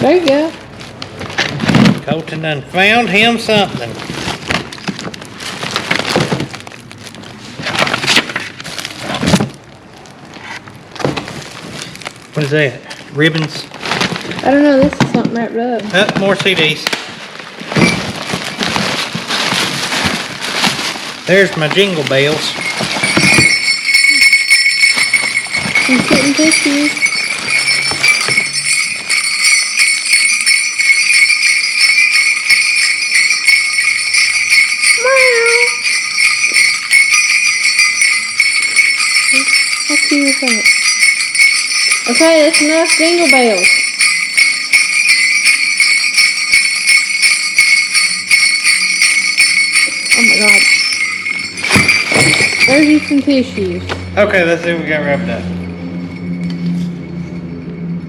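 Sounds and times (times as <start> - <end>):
items clattering together: 0.1 - 2.2, 3.5 - 30.6, 46.2 - 54.1
paper and bags rustling: 2.8 - 29.8, 49.8 - 53.7
jingle bells shaken: 17.7 - 58.0.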